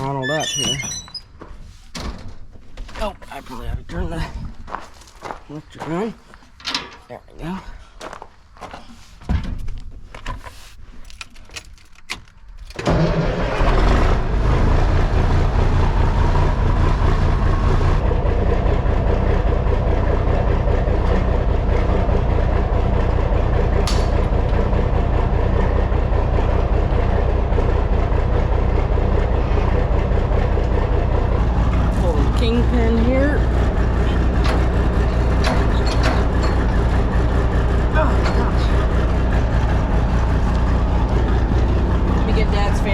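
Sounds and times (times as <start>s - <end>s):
diesel engine cranking and idling: 11.1s - 42.9s.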